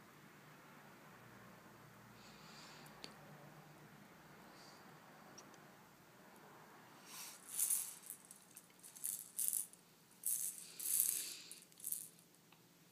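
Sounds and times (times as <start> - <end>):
hand rattle shaken: 7.3 - 12.2.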